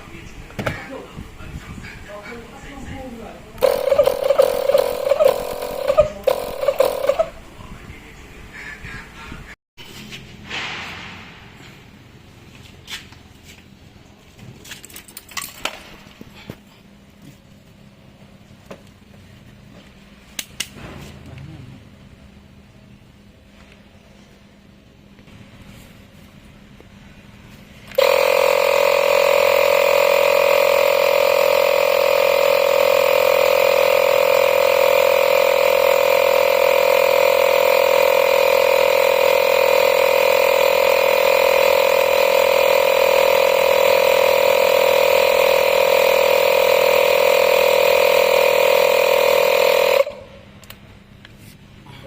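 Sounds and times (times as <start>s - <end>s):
air compressor buzzing: 3.6s - 7.6s, 27.5s - 50.8s.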